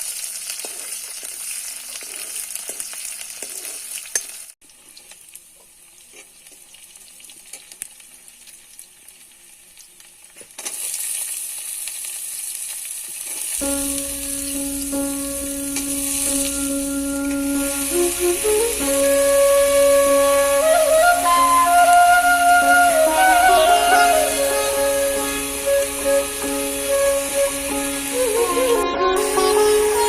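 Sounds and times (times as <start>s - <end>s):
food sizzling in a pan: 0.0s - 30.0s
flute-like background music: 13.6s - 30.0s.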